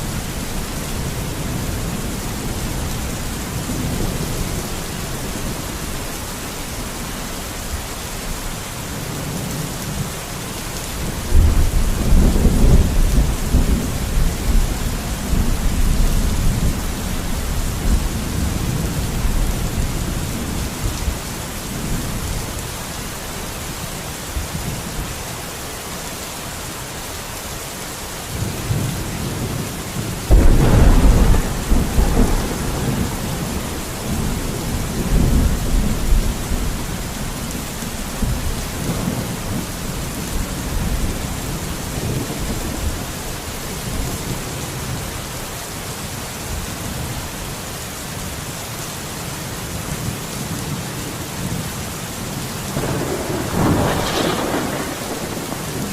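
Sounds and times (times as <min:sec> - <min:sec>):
steady rain: 0:00.0 - 0:55.9
thunder rumbling: 0:11.0 - 0:22.4, 0:28.5 - 0:44.9, 0:52.7 - 0:55.9
loud thunderclap: 0:30.3 - 0:36.9, 0:52.8 - 0:55.9.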